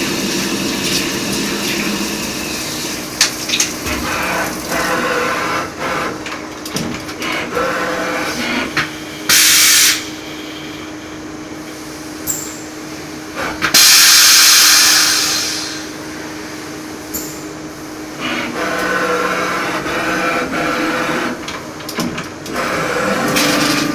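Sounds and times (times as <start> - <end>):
loud air hisses: 8.4 - 10.9, 13.7 - 16.3.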